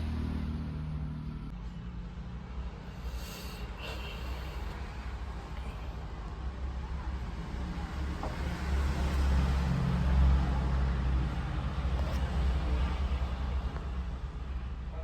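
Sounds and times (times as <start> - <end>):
vehicle engine rumbling: 0.0 - 15.0.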